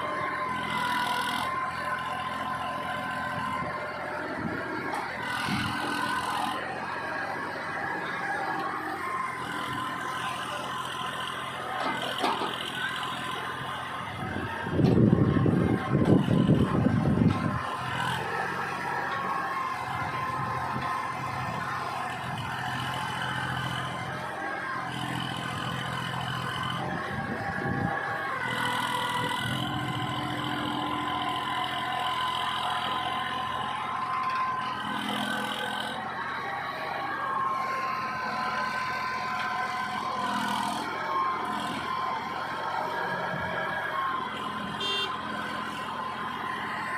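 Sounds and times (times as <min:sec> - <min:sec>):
diesel engine running: 0:00.0 - 0:46.9.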